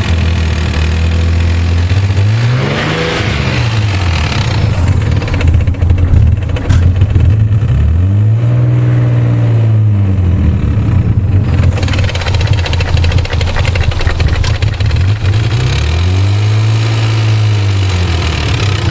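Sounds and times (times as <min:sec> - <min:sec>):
car engine revving: 0:00.0 - 0:18.9
car engine idling with ticking: 0:03.7 - 0:07.8, 0:11.3 - 0:16.1.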